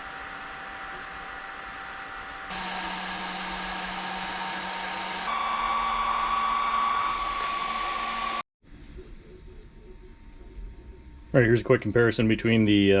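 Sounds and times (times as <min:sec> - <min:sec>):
cooling fans whining: 0:00.0 - 0:08.4.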